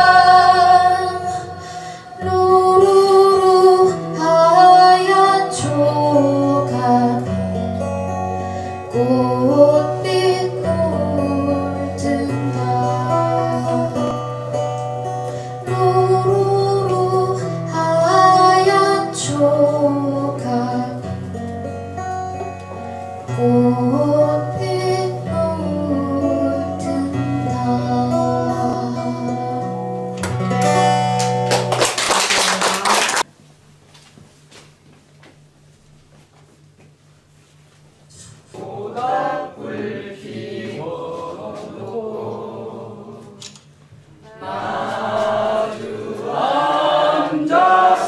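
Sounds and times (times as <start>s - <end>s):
person singing folk song: 0.0s - 7.8s, 8.5s - 14.6s, 15.3s - 21.4s, 23.3s - 29.9s
guitar accompaniment: 0.0s - 33.2s.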